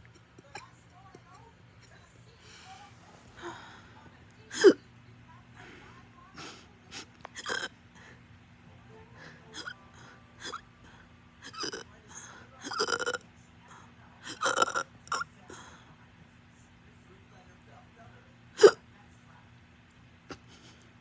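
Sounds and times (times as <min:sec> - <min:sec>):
person hiccupping: 0:07.4 - 0:07.7, 0:09.5 - 0:09.8, 0:10.4 - 0:10.6, 0:11.4 - 0:11.9, 0:12.6 - 0:13.2, 0:14.2 - 0:15.2.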